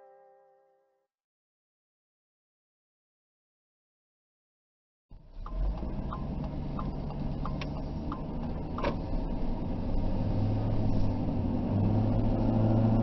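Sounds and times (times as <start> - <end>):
car engine and road hum: 5.1 - 13.0
turn signal ticking: 5.4 - 10.0.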